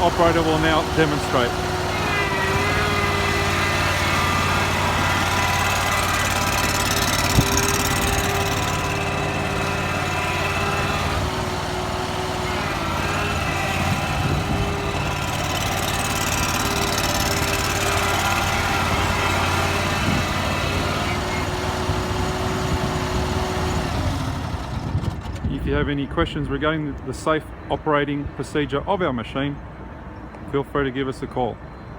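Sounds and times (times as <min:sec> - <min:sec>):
steady whine: 0:00.0 - 0:21.5
mini digger engine running: 0:00.0 - 0:25.8.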